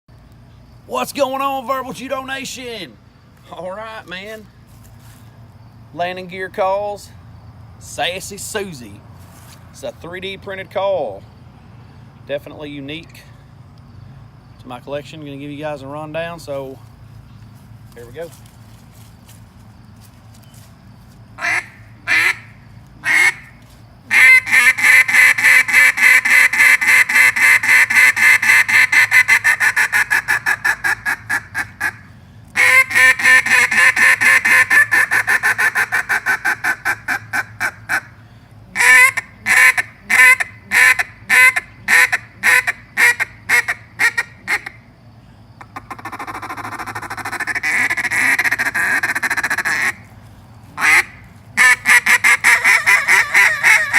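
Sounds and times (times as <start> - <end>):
duck call quacks: 21.4 - 32.0, 32.6 - 38.1, 38.7 - 44.8, 45.6 - 50.0, 50.8 - 53.9.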